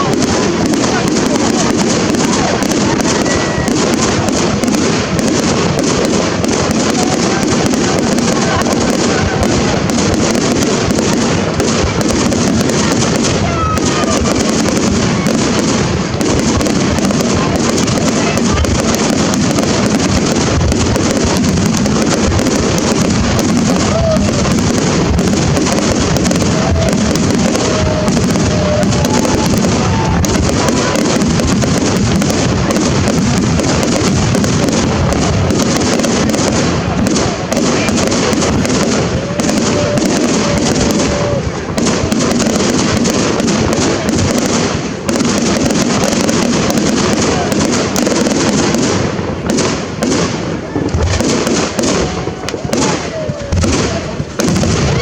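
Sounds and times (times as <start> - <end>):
faint firework whistles: 0.0 - 5.5, 6.4 - 43.4
fireworks crackling and bangs: 0.0 - 55.0.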